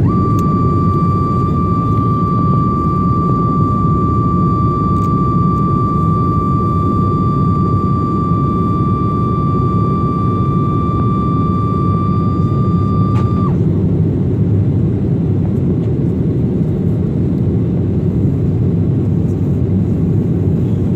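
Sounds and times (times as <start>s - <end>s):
high whine: 0.0s - 13.9s
jet engines roaring at take-off: 0.0s - 20.9s.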